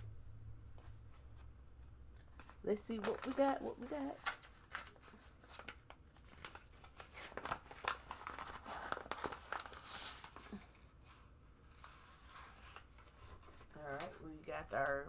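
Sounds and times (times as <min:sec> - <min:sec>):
packaging torn and crinkled: 0:02.4 - 0:10.6.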